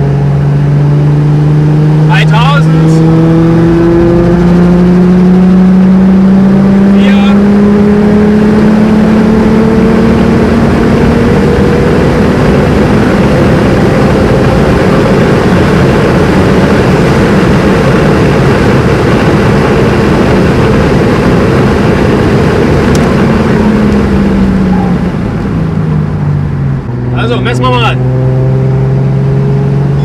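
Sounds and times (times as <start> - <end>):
car engine pulling in high gear: 0.0 - 30.0
wind and road noise: 0.0 - 30.0.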